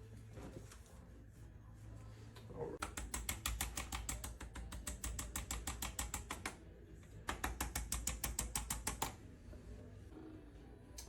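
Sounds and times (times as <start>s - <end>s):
rapid sharp clicks of adjusting instrument: 2.8s - 6.6s, 7.3s - 9.2s.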